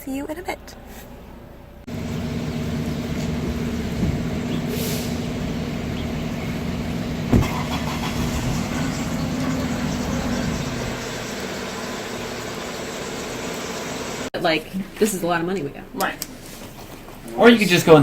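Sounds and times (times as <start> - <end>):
car engine heard from inside: 1.9 - 14.3
sharp thump: 7.2 - 8.4.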